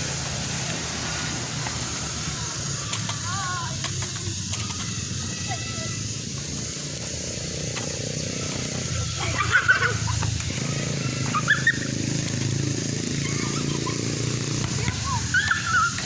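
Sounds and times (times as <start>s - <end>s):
cicadas droning: 0.0s - 16.0s.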